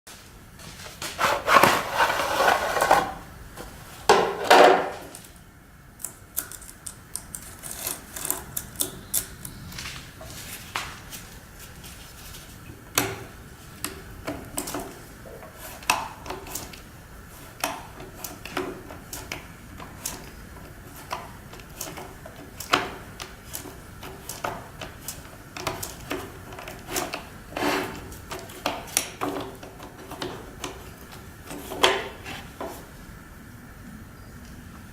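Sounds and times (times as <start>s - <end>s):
loud rustling: 0.7s - 3.2s.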